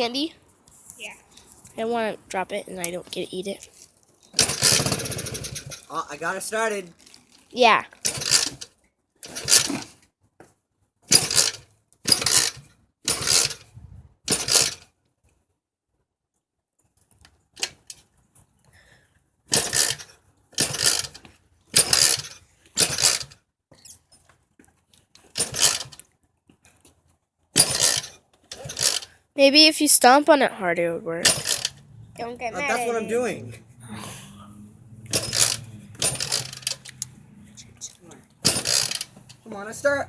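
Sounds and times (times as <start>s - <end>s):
motorcycle kick-starter clattering: 4.2s - 5.9s, 7.9s - 13.7s, 14.3s - 14.9s, 19.5s - 29.1s, 31.2s - 31.8s, 35.1s - 37.1s, 38.3s - 39.6s.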